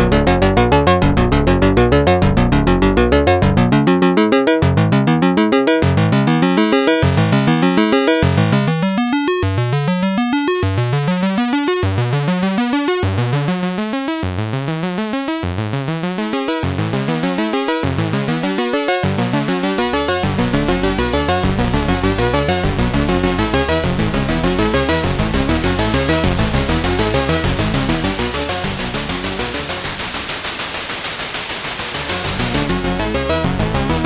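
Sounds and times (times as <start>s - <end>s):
synthesizer fast climbing notes: 18.0s - 34.0s.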